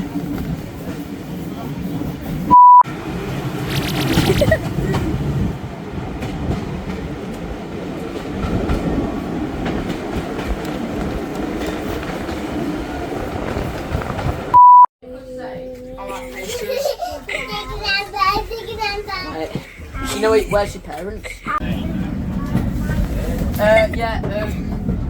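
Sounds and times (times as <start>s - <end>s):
train rumbling on rails: 0.0s - 14.6s, 16.7s - 25.0s
short loud beep tone: 2.5s - 2.8s, 14.6s - 14.9s.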